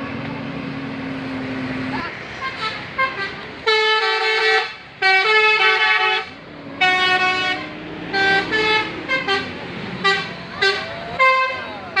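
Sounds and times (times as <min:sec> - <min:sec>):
bus musical horn playing tune: 0:02.4 - 0:12.0.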